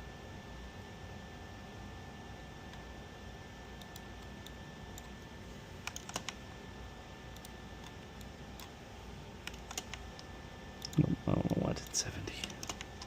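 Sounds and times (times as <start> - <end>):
low background hum: 0.0 - 13.0
computer keyboard typing: 3.8 - 5.2, 5.8 - 6.4, 7.3 - 8.8, 9.4 - 13.0.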